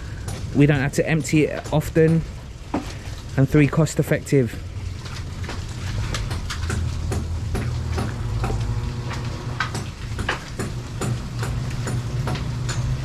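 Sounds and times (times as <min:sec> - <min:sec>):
machine humming: 0:05.7 - 0:13.0
sharp knocks and taps: 0:06.2 - 0:08.7, 0:09.6 - 0:12.9.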